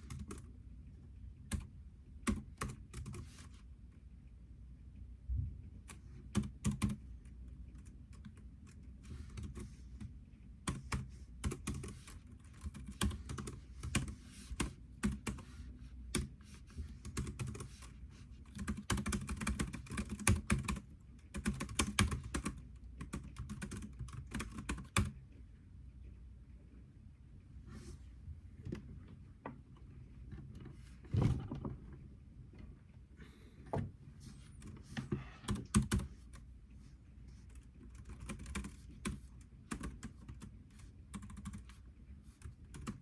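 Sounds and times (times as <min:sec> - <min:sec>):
typing on computer keyboard: 0:00.0 - 0:00.5, 0:01.5 - 0:03.5, 0:06.3 - 0:16.4, 0:17.0 - 0:25.2, 0:35.4 - 0:36.4, 0:37.5 - 0:43.0.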